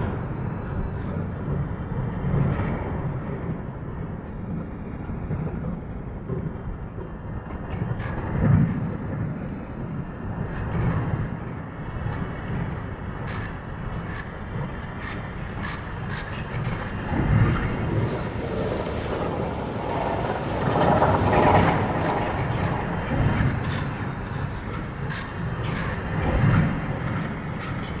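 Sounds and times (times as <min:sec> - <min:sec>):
low rumble: 0:16.0 - 0:25.6.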